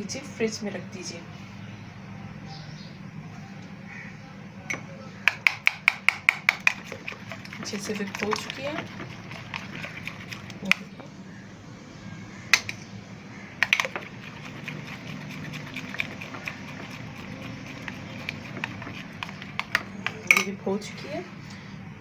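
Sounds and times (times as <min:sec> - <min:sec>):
steady low hum: 0:00.8 - 0:22.0
utensil clinking against bowl: 0:04.7 - 0:11.0, 0:13.6 - 0:21.6.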